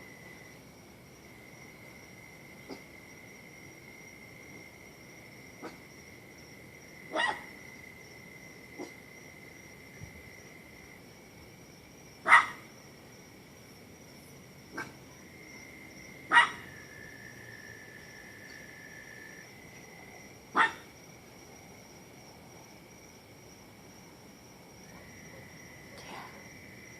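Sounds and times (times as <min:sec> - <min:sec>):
insects droning: 0:00.0 - 0:26.9
dog barking: 0:07.1 - 0:07.5, 0:12.2 - 0:12.6, 0:16.3 - 0:16.7, 0:20.5 - 0:20.8.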